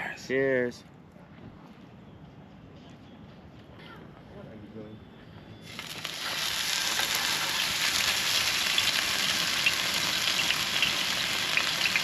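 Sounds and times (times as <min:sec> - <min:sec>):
meat sizzling on a grill: 0:05.7 - 0:12.0.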